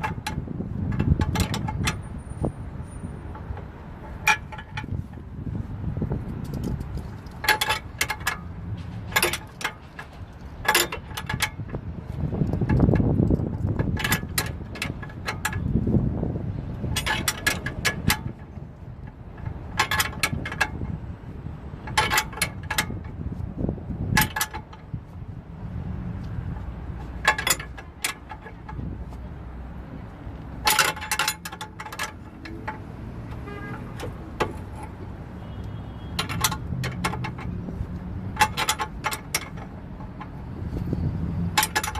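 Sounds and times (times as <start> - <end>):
hand tools clinking on steel: 27.0 - 28.8, 30.6 - 35.0, 41.5 - 41.9.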